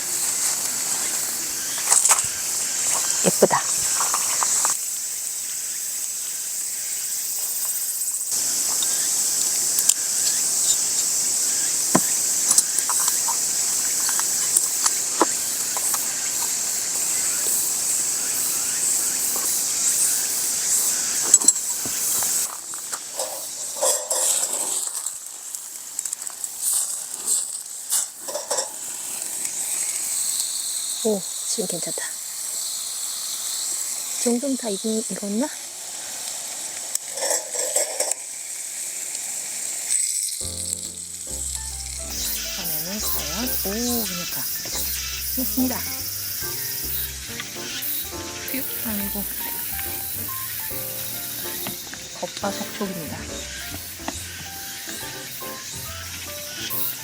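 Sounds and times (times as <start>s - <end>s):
high-pitched insect chorus: 0.0s - 57.0s
light clicks and crackles: 21.3s - 28.8s.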